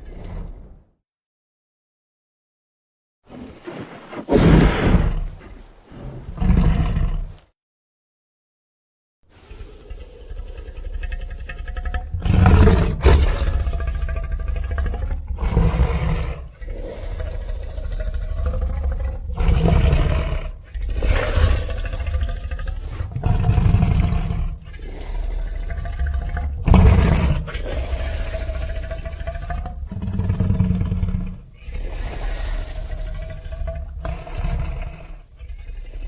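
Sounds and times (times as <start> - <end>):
deep creature roars: 9.4 - 36.0.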